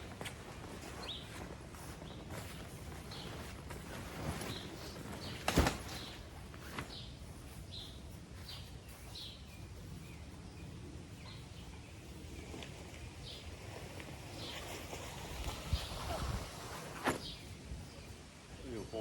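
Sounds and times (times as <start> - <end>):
small birds chirping: 0.0 - 19.0
tent frame snapping: 3.1 - 7.0, 16.8 - 17.4.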